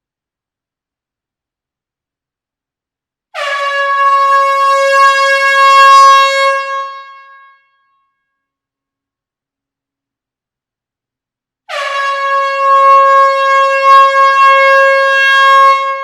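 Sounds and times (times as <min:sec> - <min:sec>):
air horn blast: 0:03.3 - 0:07.6, 0:11.7 - 0:16.0.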